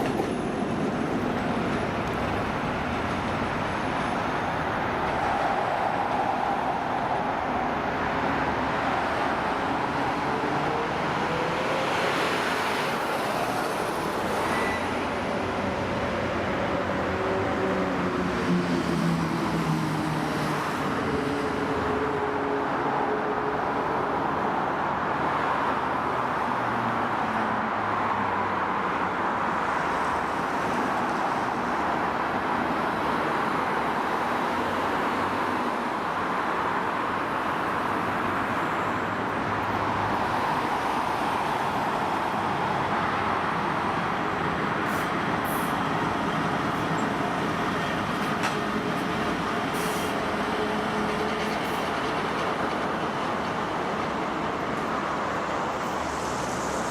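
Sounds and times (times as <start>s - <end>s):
train wheels rumbling on track: 0.0s - 24.9s, 37.5s - 56.9s.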